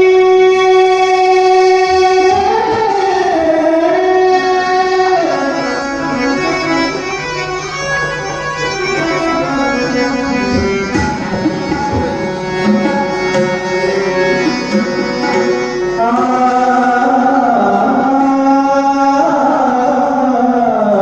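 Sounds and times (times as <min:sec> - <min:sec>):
man singing long notes: 0:00.0 - 0:07.0, 0:14.0 - 0:21.0
harmonium melody: 0:00.0 - 0:21.0
hand drum strokes: 0:10.4 - 0:15.6.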